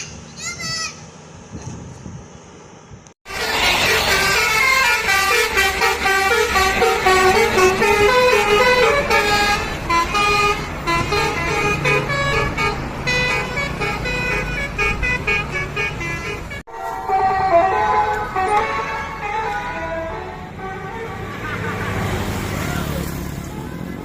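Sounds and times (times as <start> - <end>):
multi-tone musical horn melody: 3.3 - 22.5.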